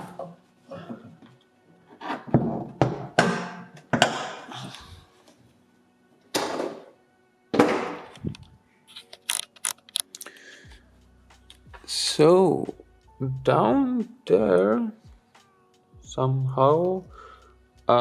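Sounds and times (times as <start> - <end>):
faint background music: 0.0 - 18.0.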